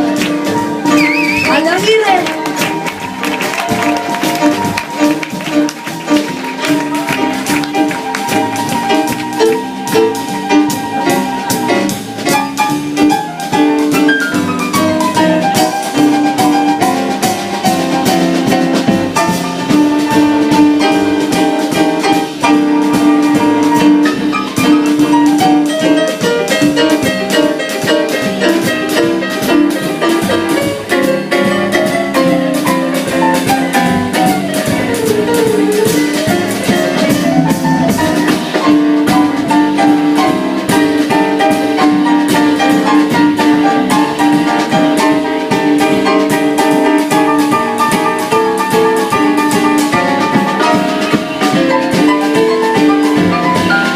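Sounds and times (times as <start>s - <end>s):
drum kit beat: 0.0s - 53.9s
jazz band playing: 0.0s - 53.9s.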